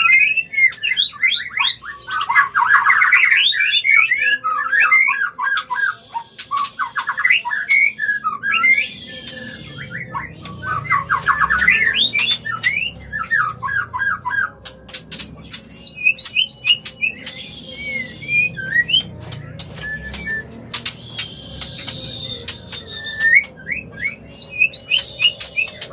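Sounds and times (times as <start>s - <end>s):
bird song with harsh rasps: 0.0s - 25.9s.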